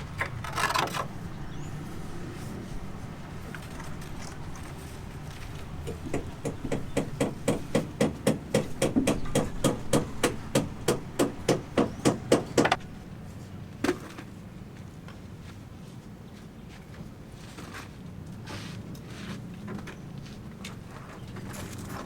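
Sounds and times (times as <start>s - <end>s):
hammer striking: 5.8s - 12.8s.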